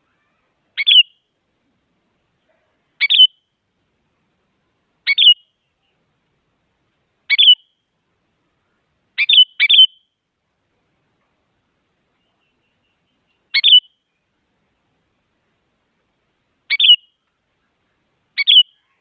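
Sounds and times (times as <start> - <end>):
bulbul sharp calls: 0.0 - 1.3, 3.0 - 3.5, 5.0 - 6.0, 7.3 - 7.8, 9.2 - 10.2, 12.2 - 14.1, 16.7 - 17.2, 18.3 - 19.0.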